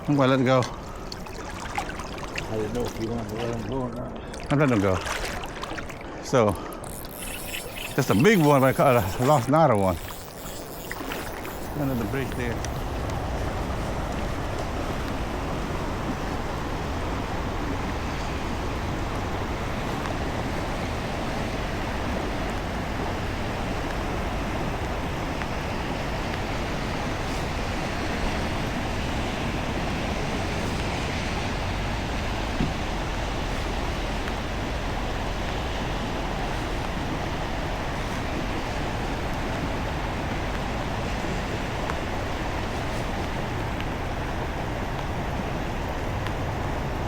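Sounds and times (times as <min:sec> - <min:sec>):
flowing river water: 0:00.0 - 0:47.0.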